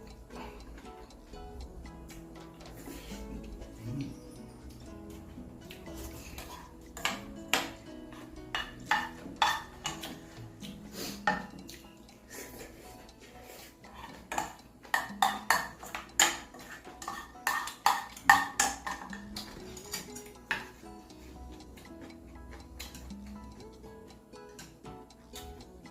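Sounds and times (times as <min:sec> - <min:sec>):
background music: 0:00.0 - 0:25.9
spoon and chopsticks clinking bowl: 0:03.8 - 0:11.8, 0:12.4 - 0:20.8.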